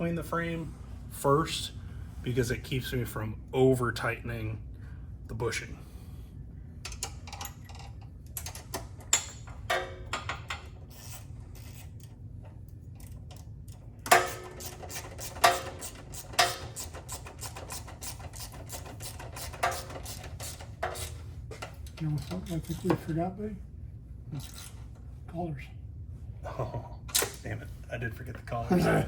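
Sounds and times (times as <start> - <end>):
steady low hum: 0.0 - 29.0
ratchet wrench clicking: 14.1 - 21.2.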